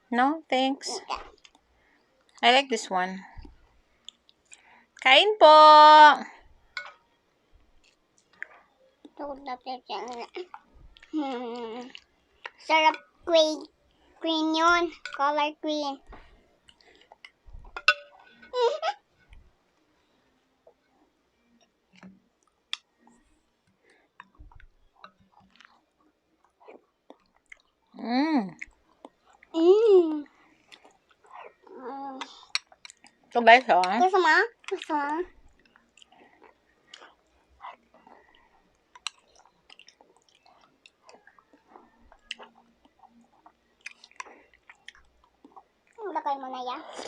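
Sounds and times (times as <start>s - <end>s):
person chewing food: 1.1s - 2.4s, 7.6s - 9.2s, 10.1s - 14.2s, 16.1s - 18.5s, 20.6s - 29.6s, 30.3s - 46.0s.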